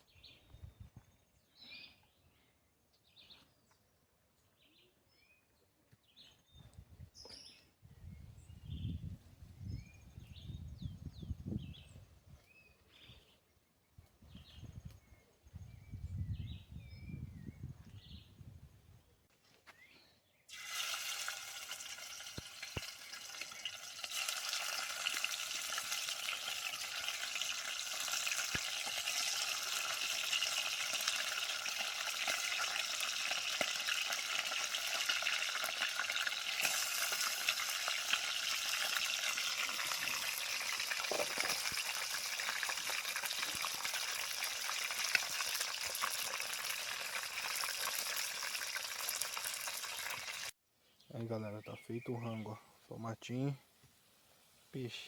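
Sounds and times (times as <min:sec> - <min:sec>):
oil popping and crackling: 0:20.5 - 0:50.5
fish sizzling in hot oil: 0:20.5 - 0:50.6.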